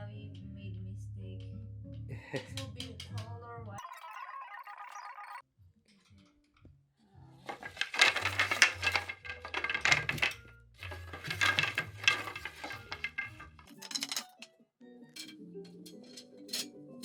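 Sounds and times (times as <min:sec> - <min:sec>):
metal hardware clinking and rattling: 0:07.5 - 0:14.5, 0:15.2 - 0:16.8.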